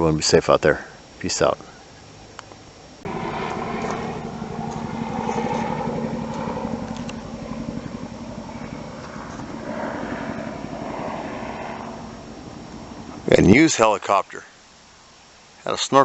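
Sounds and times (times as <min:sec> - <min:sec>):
helicopter rotor chopping: 0:03.0 - 0:14.0.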